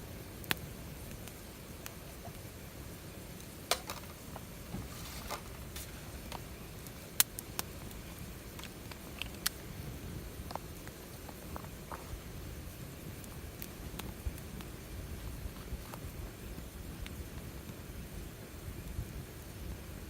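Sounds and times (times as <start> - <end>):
sharp clicks and pops: 3.4 - 9.6.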